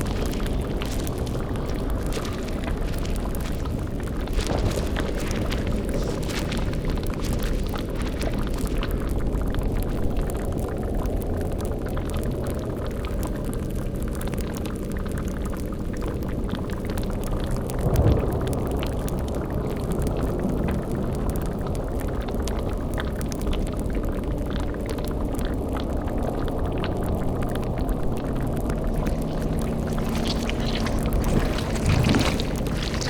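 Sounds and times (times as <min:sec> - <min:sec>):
fire crackling: 0:00.0 - 0:15.6, 0:17.0 - 0:23.4, 0:26.5 - 0:33.0
cauldron bubbling: 0:00.0 - 0:23.1, 0:25.0 - 0:33.0
low rumbling drone: 0:17.6 - 0:20.8, 0:26.5 - 0:33.0.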